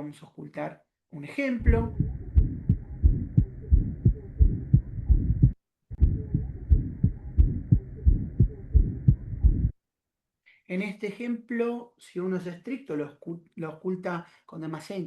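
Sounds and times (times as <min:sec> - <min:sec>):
heartbeat lub-dub: 0:01.6 - 0:09.8
soft heart murmur: 0:01.6 - 0:09.8.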